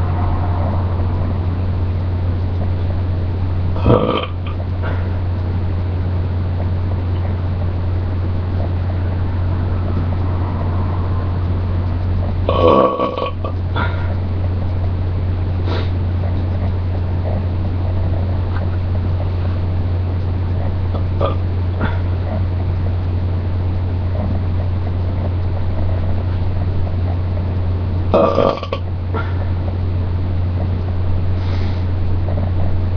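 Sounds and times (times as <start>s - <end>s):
steady low hum: 0.0s - 32.9s
faint hiss: 31.4s - 32.0s.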